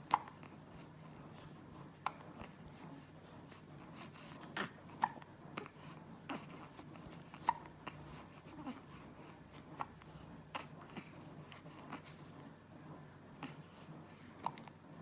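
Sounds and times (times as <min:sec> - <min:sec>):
hiccups: 0:00.1 - 0:00.4, 0:07.4 - 0:07.7.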